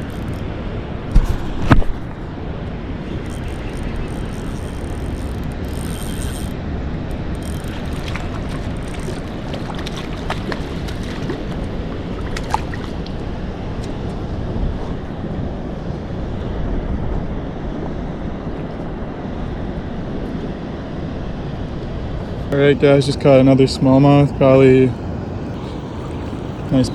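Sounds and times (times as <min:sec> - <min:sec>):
wind buffeting microphone: 0:00.0 - 0:26.9
small clicks and ticks: 0:03.2 - 0:11.4.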